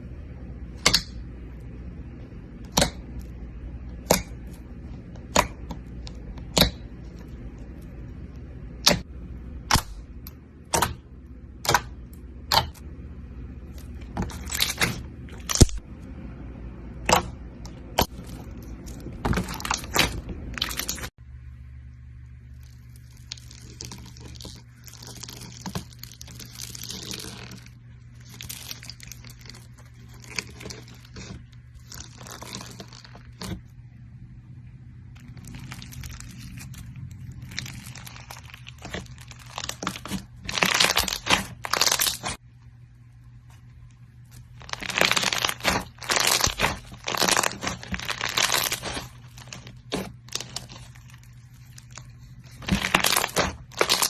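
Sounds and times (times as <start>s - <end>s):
faint low hum: 0.0s - 54.0s
crunchy slime being squeezed: 13.7s - 15.8s, 17.0s - 21.1s, 22.5s - 33.6s, 35.2s - 42.4s, 44.3s - 54.0s.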